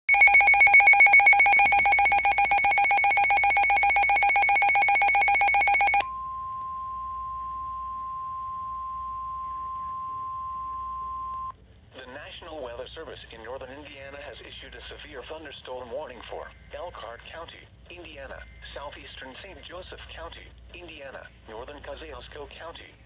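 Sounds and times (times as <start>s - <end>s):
pulsing electronic alarm beep: 0.1s - 6.1s
steady alarm tone: 0.1s - 6.1s.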